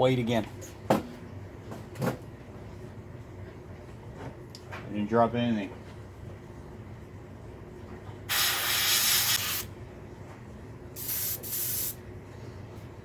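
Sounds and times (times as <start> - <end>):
airbrush spraying hiss: 8.3 - 9.7, 11.0 - 12.0.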